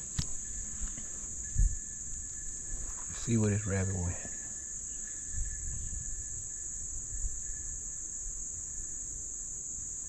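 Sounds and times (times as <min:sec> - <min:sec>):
insect chorus drone: 0:00.0 - 0:10.0.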